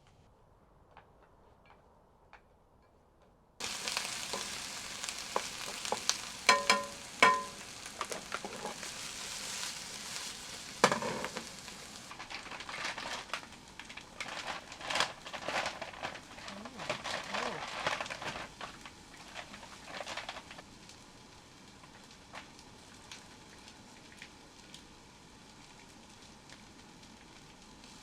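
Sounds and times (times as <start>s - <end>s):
utensil stirring and scraping: 3.6s - 13.4s
food sizzling in a pan: 3.6s - 28.0s
metallic clinks against pan: 6.5s - 7.6s.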